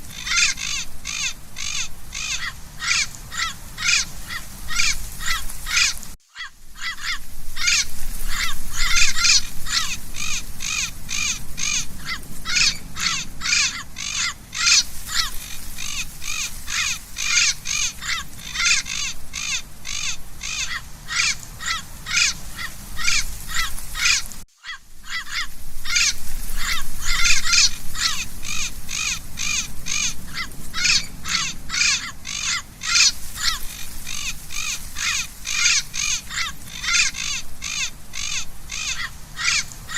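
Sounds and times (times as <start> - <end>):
parrot squawking: 0.1 - 39.9.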